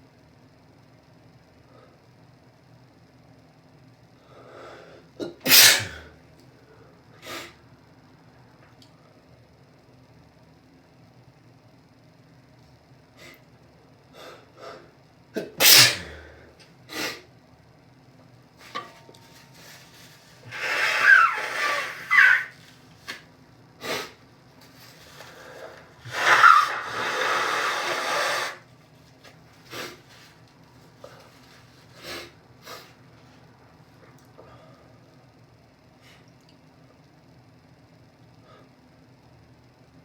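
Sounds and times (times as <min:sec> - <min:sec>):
person sneezing: 0:05.2 - 0:06.1, 0:15.4 - 0:16.3, 0:20.4 - 0:22.6, 0:26.1 - 0:28.6
sniffs and breaths: 0:29.7 - 0:30.4.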